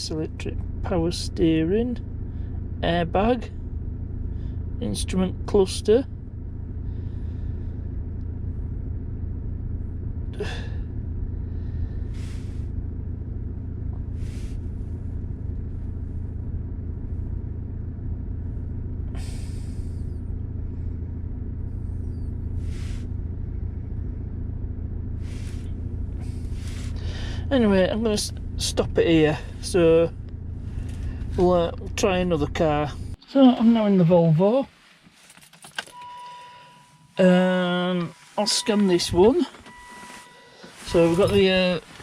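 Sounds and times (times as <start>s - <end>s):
car engine idling: 0.0s - 42.0s
short hissing noises: 12.1s - 12.7s, 22.6s - 23.1s, 25.2s - 27.0s.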